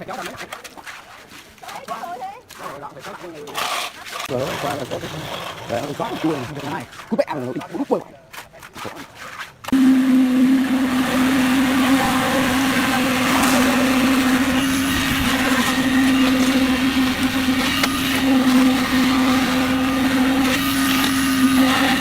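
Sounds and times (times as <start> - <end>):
concrete mixer motor humming: 2.7 - 7.6, 9.7 - 22.0.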